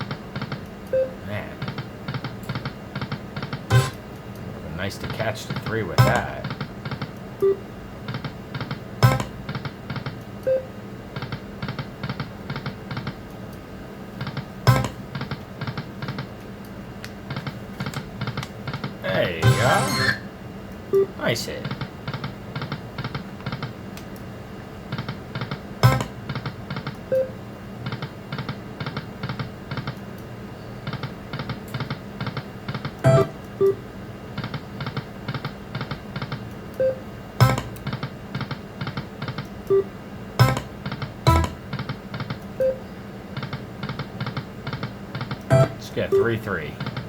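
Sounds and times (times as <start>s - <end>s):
short electronic beeps: 0.9s - 1.2s, 42.6s - 42.8s
slot machine quick ticking: 6.0s - 6.4s, 19.4s - 20.2s, 41.3s - 41.6s.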